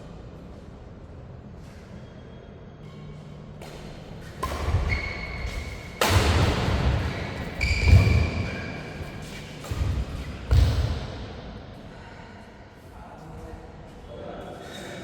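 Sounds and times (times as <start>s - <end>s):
shoe squeaks: 1.6s - 3.4s, 4.4s - 6.1s, 6.9s - 9.6s
racket hitting shuttlecock: 3.6s - 11.2s.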